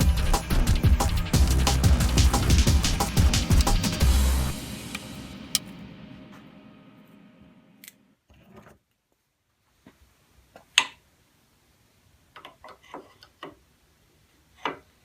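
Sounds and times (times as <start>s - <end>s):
hand tools clicking and tapping: 2.3s - 4.1s, 4.8s - 5.7s.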